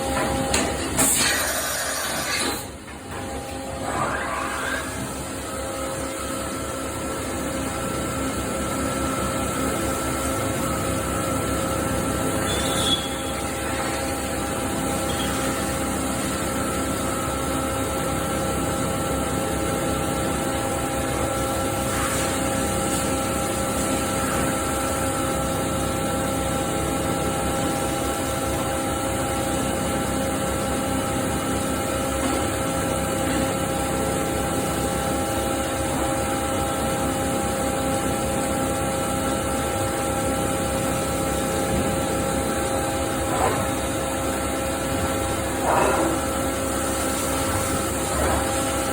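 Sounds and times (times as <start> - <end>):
cnc machine cutting steel: 0.0 - 7.0.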